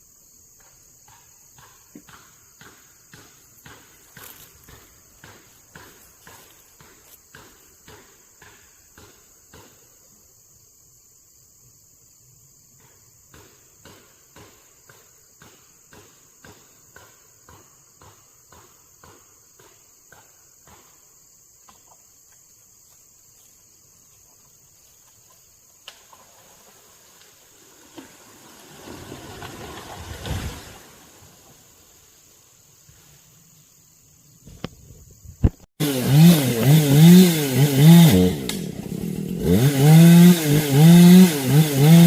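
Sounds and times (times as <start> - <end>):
insects trilling: 0.0 - 35.7
rustling rumbling noise: 28.2 - 31.5.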